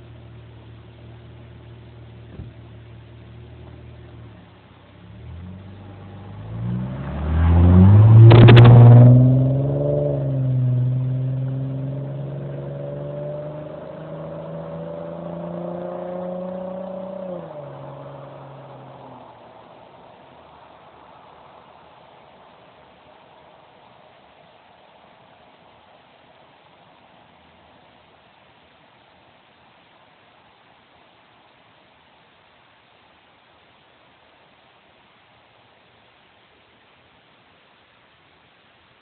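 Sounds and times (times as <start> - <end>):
car engine idling and revving: 0.0 - 22.3.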